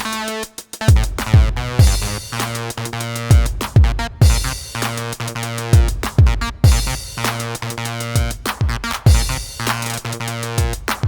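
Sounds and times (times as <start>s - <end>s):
buzzy acid bass line: 0.0s - 11.0s
fast hi-hats: 0.0s - 11.0s
kick drum hits: 0.9s - 2.2s, 3.3s - 4.6s, 5.8s - 7.0s.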